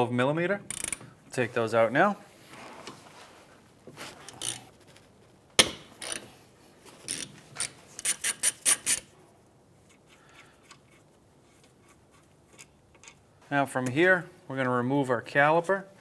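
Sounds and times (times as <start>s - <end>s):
ratchet clicks: 0.7s - 1.0s.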